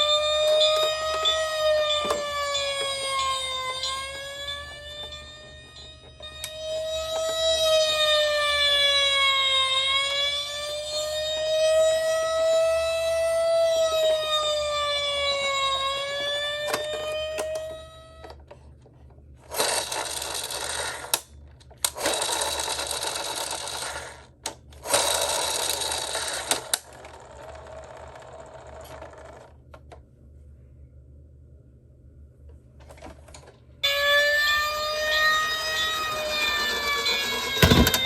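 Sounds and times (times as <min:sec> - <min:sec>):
siren wailing: 0:00.0 - 0:18.4, 0:33.8 - 0:38.0
toy cars rolling down a slope: 0:19.5 - 0:21.2, 0:21.9 - 0:29.6, 0:35.0 - 0:38.0.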